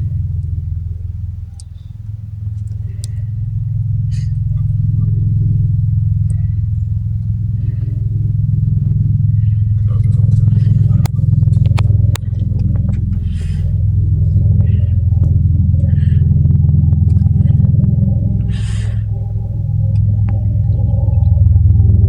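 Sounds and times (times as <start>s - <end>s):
helicopter rotor beating: 0.0s - 22.0s.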